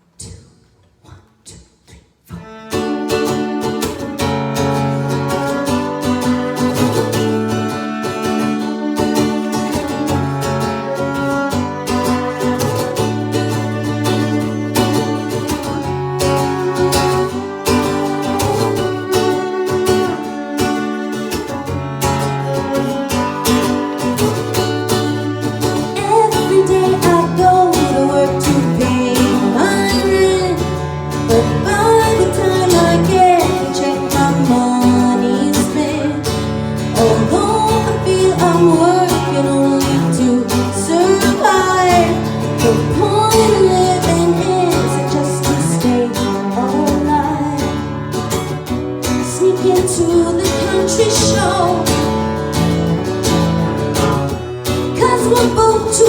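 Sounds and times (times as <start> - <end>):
acoustic guitar strumming: 2.3 - 56.0
person singing: 25.3 - 47.8, 49.0 - 52.2, 54.9 - 56.0.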